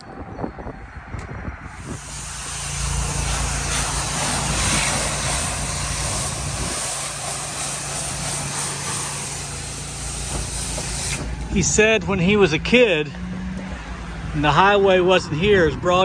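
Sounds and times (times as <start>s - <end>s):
high-pressure water spray hissing: 1.7s - 11.8s
pressure washer engine drone: 1.7s - 12.0s.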